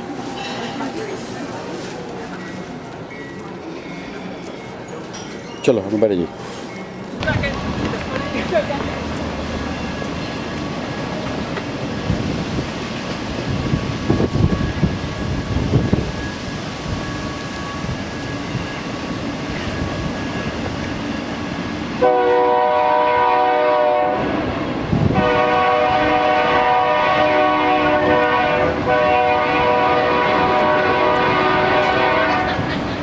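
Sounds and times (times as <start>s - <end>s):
train horn blasts: 22.0s - 32.8s.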